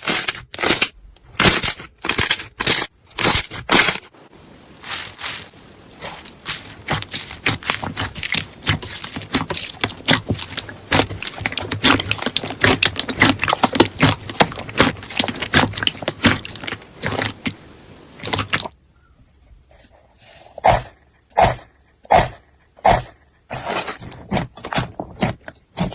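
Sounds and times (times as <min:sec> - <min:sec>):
crunchy slime crackling and popping: 0:00.0 - 0:04.1, 0:04.7 - 0:18.7.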